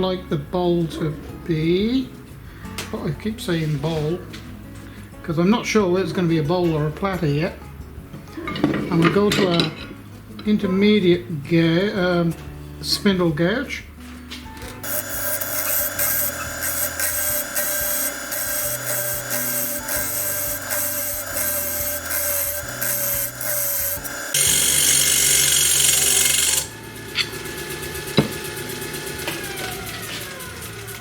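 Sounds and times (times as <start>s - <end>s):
gouge rasping on spinning wood: 14.8s - 29.3s
lathe motor hum: 14.8s - 31.0s.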